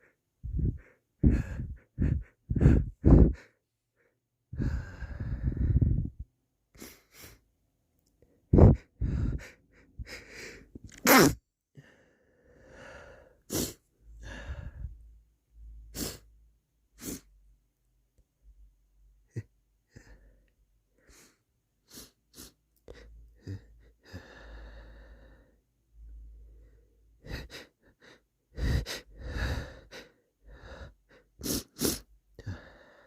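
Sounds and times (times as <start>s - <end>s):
sniffling: 0.0s - 6.1s, 8.5s - 12.0s, 12.6s - 14.8s, 15.9s - 16.3s, 17.0s - 17.3s, 21.0s - 25.5s, 27.2s - 33.0s
short catching breaths: 0.0s - 6.2s
person stifling sneezes: 10.8s - 11.4s, 31.4s - 32.1s.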